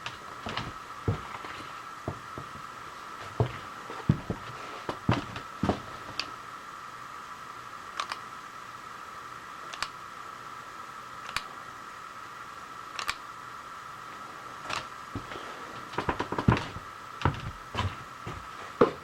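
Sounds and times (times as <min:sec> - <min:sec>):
sharp clicks: 0:08.0 - 0:08.2, 0:09.7 - 0:10.0, 0:11.2 - 0:11.5, 0:13.0 - 0:13.2.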